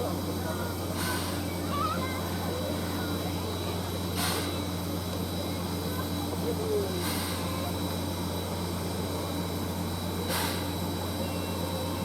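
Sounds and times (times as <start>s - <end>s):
steam locomotive hum and whine: 0.0s - 12.0s
steam hiss: 4.1s - 4.7s, 6.9s - 7.5s, 10.2s - 10.9s.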